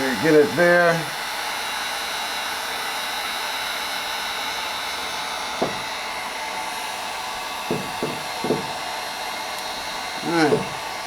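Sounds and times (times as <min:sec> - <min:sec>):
heat gun blowing: 0:00.0 - 0:11.0
light knock: 0:05.6 - 0:05.9, 0:07.7 - 0:08.8, 0:10.4 - 0:10.8.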